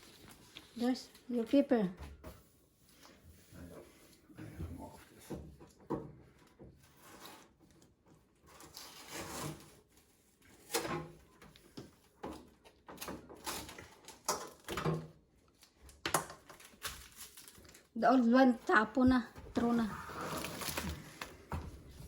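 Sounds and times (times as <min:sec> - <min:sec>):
packaging rustling: 0:16.4 - 0:18.0, 0:19.5 - 0:22.0
packaging knocks and scrapes: 0:19.1 - 0:22.0.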